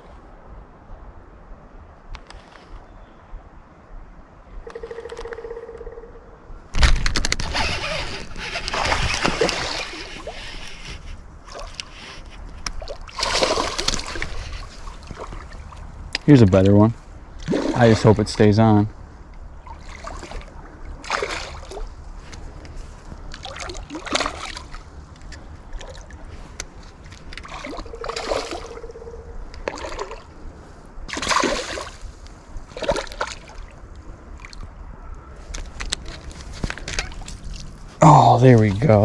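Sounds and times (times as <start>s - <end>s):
low background rumble: 5.6s - 39.0s
fish splashing at water surface: 12.8s - 15.8s, 31.1s - 32.1s.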